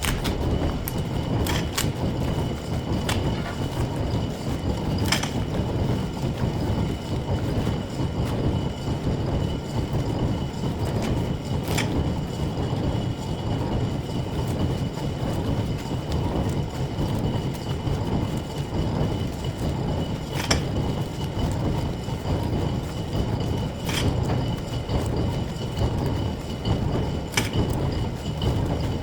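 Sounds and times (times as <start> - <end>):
lathe running with whine: 0.0 - 29.0.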